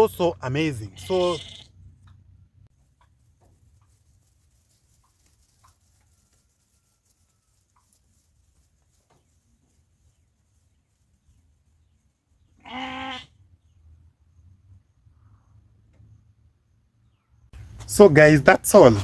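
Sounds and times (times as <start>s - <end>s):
farm animal bleating: 0.5s - 1.9s, 12.6s - 13.4s.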